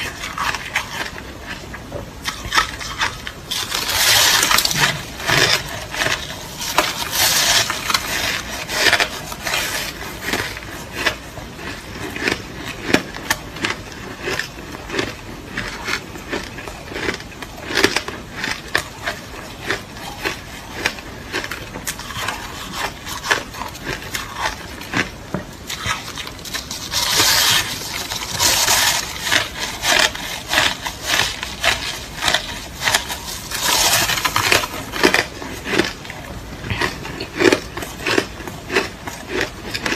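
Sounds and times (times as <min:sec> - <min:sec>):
person chewing crushed ice: 0:00.0 - 0:39.9.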